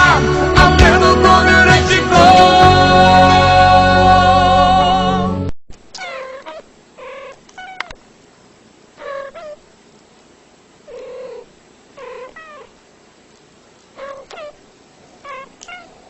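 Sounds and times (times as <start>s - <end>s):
cat meowing: 6.0s - 8.0s, 9.0s - 9.6s, 10.9s - 12.7s, 14.0s - 14.6s, 15.2s - 16.0s.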